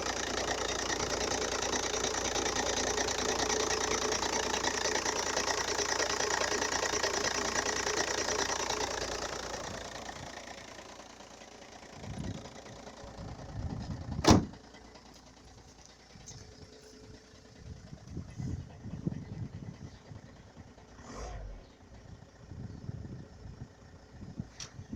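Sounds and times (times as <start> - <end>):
diesel engine rattling knock: 0.0 - 10.8, 11.8 - 15.6
low rumbles: 17.4 - 24.9.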